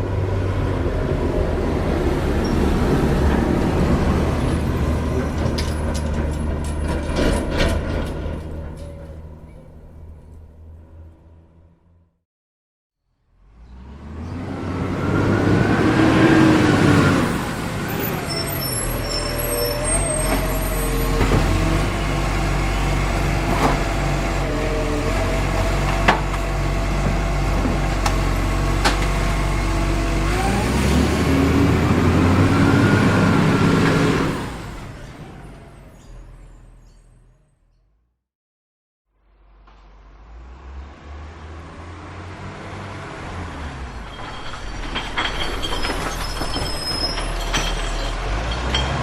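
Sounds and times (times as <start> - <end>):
truck engine revving: 13.4 - 35.8, 39.9 - 44.0.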